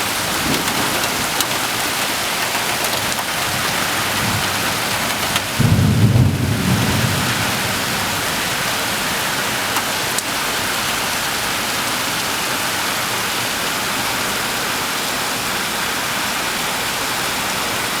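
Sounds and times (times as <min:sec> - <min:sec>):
low thunder rumble: 0:00.0 - 0:02.2, 0:03.4 - 0:09.7
rain falling: 0:00.0 - 0:18.0.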